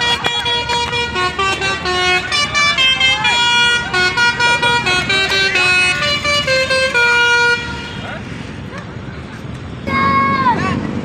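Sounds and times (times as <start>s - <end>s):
musical bus horn playing a tune: 0.0s - 8.1s.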